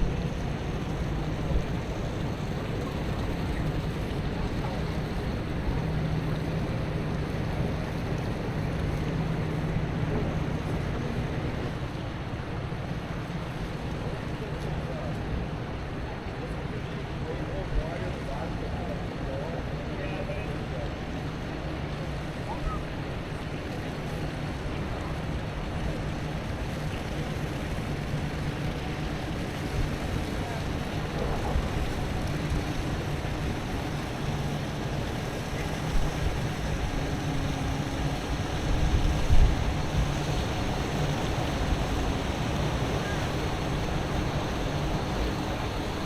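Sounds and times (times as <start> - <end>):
steamship engine rumble: 0.0 - 46.0
water wash: 0.0 - 46.0
ship machinery humming: 22.3 - 46.0
wind noise on microphone: 26.3 - 46.0.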